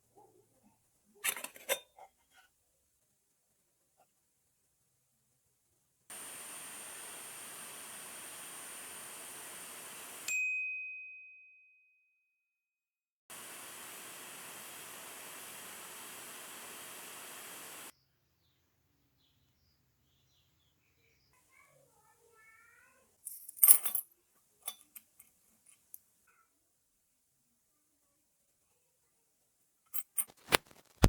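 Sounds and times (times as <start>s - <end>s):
steady hiss: 6.1s - 10.3s, 13.3s - 17.9s.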